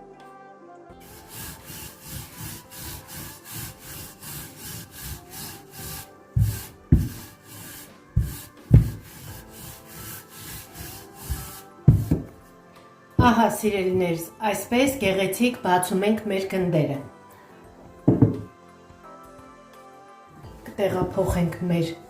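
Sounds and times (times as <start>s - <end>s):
rolling pin rolling dough: 1.0s - 12.5s, 13.2s - 14.2s, 18.0s - 18.5s, 20.5s - 21.9s
heavy thumps: 6.4s - 7.3s, 8.1s - 9.3s, 11.2s - 12.4s, 13.2s - 14.1s, 18.0s - 18.5s.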